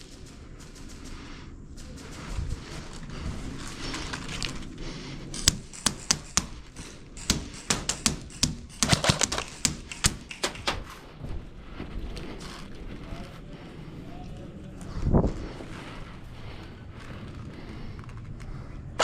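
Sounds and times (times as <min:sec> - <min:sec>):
airsoft gun shots: 0:05.4 - 0:10.9.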